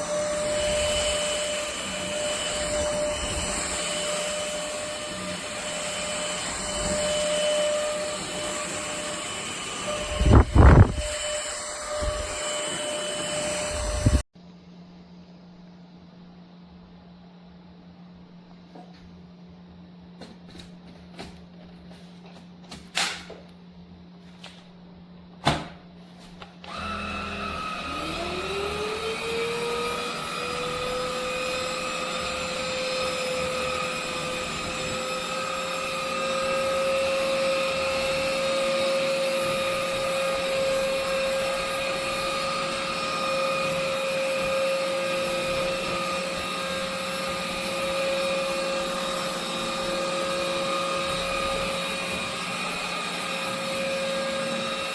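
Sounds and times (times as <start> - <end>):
stick vacuum motor whining: 0.0 - 14.3, 26.6 - 54.9.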